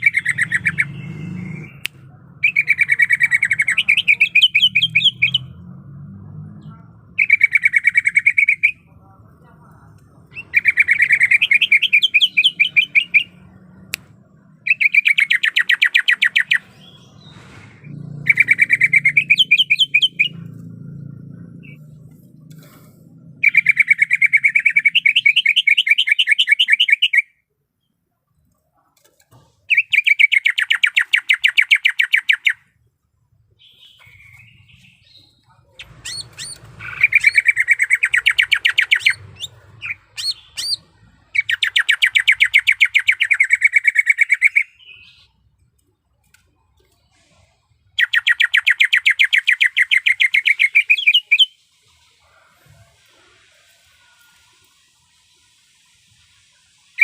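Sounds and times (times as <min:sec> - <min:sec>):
bird singing rapid trills: 0:00.0 - 0:05.6, 0:06.7 - 0:08.9, 0:10.3 - 0:13.6, 0:14.6 - 0:17.3, 0:18.1 - 0:22.1, 0:23.3 - 0:27.3, 0:33.6 - 0:45.4, 0:47.9 - 0:52.0.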